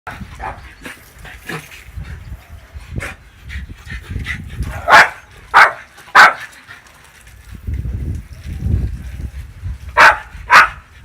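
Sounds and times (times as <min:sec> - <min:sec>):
wind rumble on microphone: 0:00.1 - 0:05.7, 0:06.7 - 0:11.0
dog barking: 0:04.8 - 0:06.4, 0:10.0 - 0:10.8.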